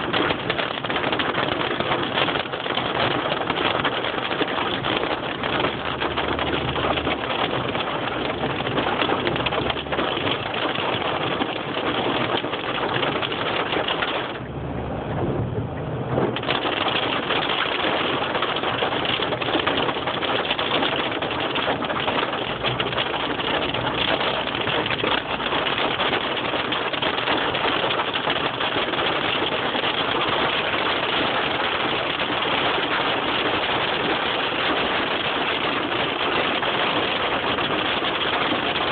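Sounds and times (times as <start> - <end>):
hail and rain pelting: 0.0 - 14.4, 16.3 - 38.9
low hum: 13.2 - 18.2.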